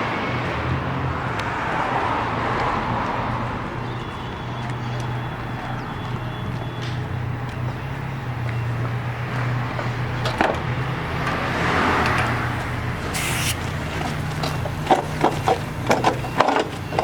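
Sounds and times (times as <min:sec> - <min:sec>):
vehicle engine idling: 0:02.7 - 0:17.0
short hiss: 0:13.1 - 0:13.7.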